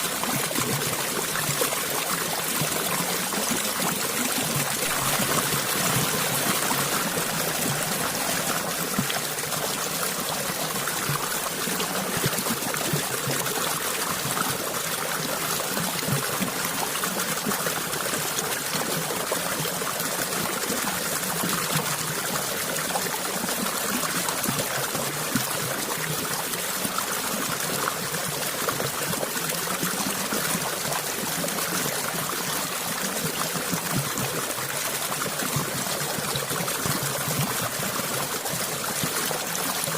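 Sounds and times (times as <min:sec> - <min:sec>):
stream water trickling: 0:00.0 - 0:39.9.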